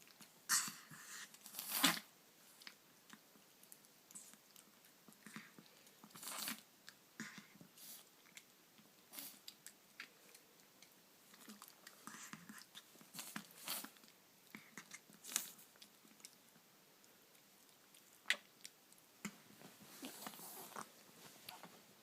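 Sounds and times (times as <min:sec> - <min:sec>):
small dog sneezing: 0:00.5 - 0:02.1.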